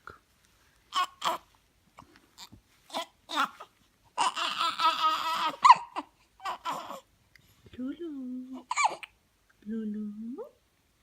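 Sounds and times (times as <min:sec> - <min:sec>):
baby hiccupping: 0:00.9 - 0:01.5, 0:02.4 - 0:07.1, 0:08.6 - 0:09.2
baby wavering voice: 0:02.4 - 0:07.1, 0:08.5 - 0:09.2.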